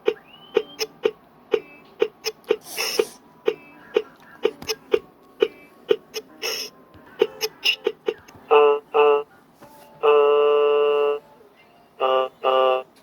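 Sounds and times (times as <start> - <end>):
hissing bursts: 2.6 - 3.2.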